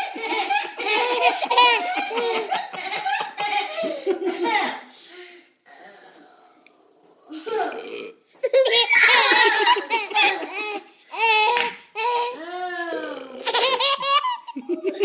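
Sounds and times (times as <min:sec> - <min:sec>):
baby laughing: 0:00.0 - 0:03.8, 0:08.4 - 0:12.4, 0:13.4 - 0:15.0.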